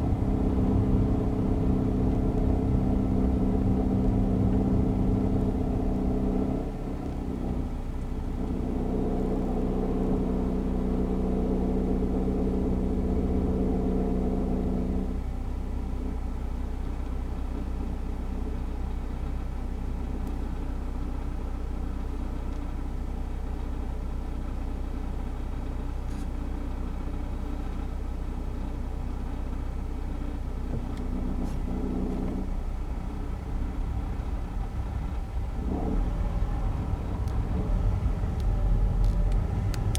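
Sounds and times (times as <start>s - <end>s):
car engine idling: 15.1s - 39.9s.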